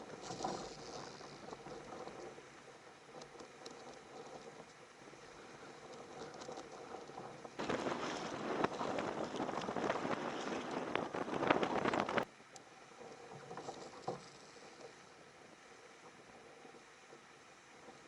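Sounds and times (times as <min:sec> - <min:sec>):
faint ticks: 0:00.0 - 0:07.6, 0:10.9 - 0:18.0
water splashing against kayak hull: 0:00.0 - 0:12.4.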